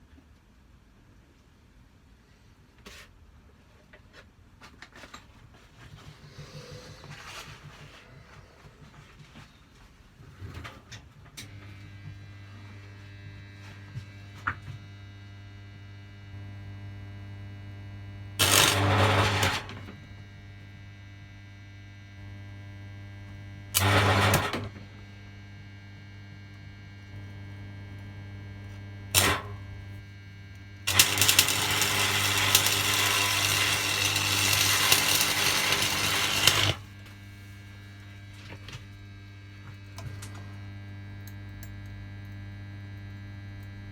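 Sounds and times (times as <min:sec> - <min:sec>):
arc welder humming: 0:17.2 - 0:21.6, 0:22.2 - 0:25.5, 0:27.0 - 0:43.3
welding arc crackling and sizzling: 0:18.4 - 0:19.9, 0:23.8 - 0:24.7, 0:29.2 - 0:29.8, 0:30.9 - 0:37.2.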